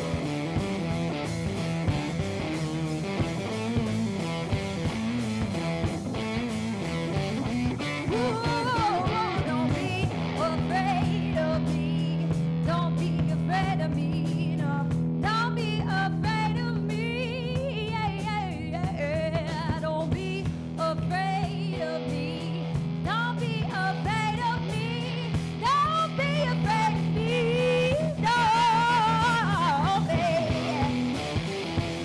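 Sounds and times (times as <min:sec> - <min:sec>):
jazz band playing: 0:00.0 - 0:11.2, 0:27.0 - 0:32.0
sliding lead melody with vibrato: 0:00.0 - 0:32.0.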